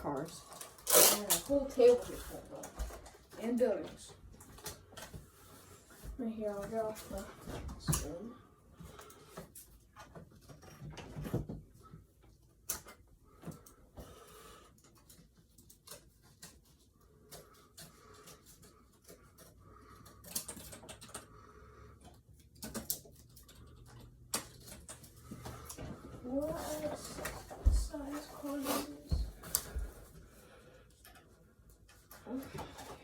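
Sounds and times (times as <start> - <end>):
toy cars and packaging handled: 0.0 - 8.3, 14.6 - 21.3, 21.9 - 30.2.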